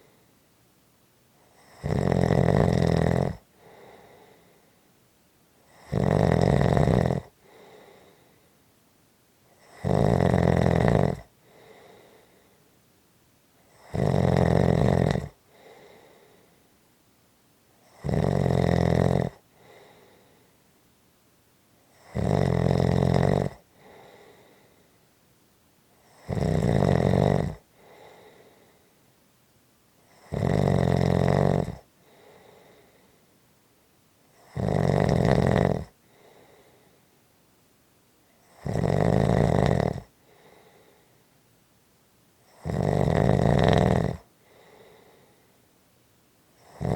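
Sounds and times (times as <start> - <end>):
person snoring: 1.6 - 4.6, 5.7 - 8.2, 9.6 - 12.3, 13.7 - 16.4, 17.9 - 20.3, 21.9 - 24.7, 26.0 - 28.8, 30.1 - 33.0, 34.4 - 36.8, 38.4 - 41.0, 42.5 - 45.3, 46.6 - 46.9
faint short breath: 3.5 - 4.9, 7.4 - 8.6, 11.4 - 12.8, 23.8 - 25.0, 27.7 - 29.0, 32.0 - 33.4, 36.0 - 37.1, 40.2 - 41.4, 44.4 - 45.7.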